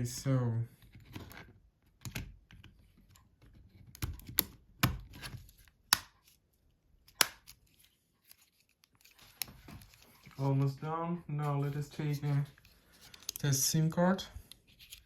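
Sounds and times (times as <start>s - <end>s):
plastic parts rustling: 11.5s - 13.7s
plastic clicks and snaps: 13.1s - 13.5s.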